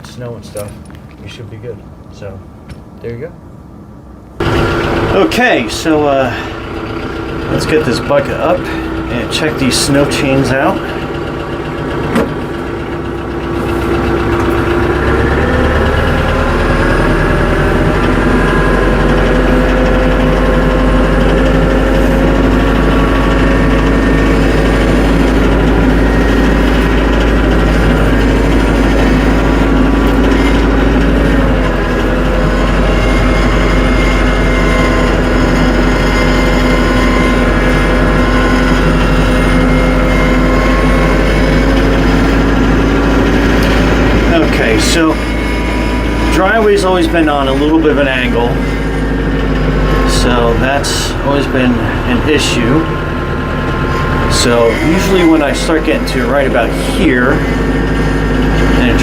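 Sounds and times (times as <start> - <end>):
tractor diesel engine revving: 4.4 - 59.0.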